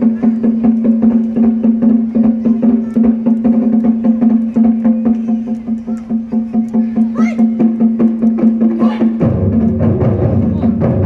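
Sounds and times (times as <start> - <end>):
drum or woodblock strikes: 0.0 - 11.0.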